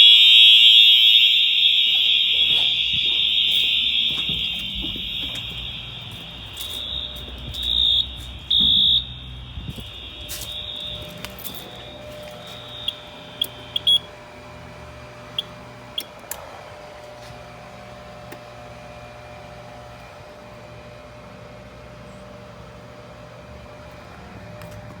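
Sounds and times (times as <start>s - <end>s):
fire alarm chirps: 0.0s - 16.2s
steady hum: 0.0s - 21.6s.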